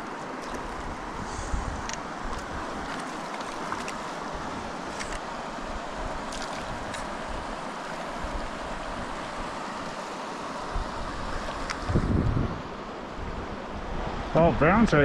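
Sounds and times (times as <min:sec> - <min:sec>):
creek water running over riffles: 0:00.0 - 0:15.0
wind buffeting microphone: 0:00.6 - 0:03.0, 0:10.7 - 0:15.0.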